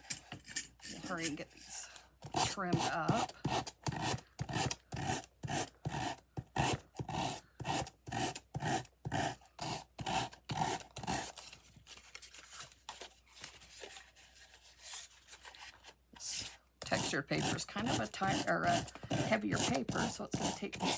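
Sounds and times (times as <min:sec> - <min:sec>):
sandpaper rasping on paper: 0:16.3 - 0:20.9.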